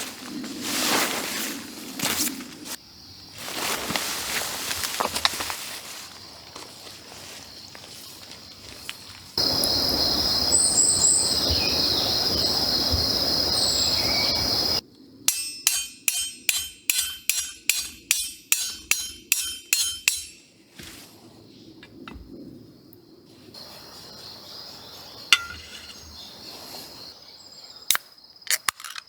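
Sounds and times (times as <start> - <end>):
high insect drone: 6.1 - 20.5
metallic hammer strikes: 15.3 - 20.5.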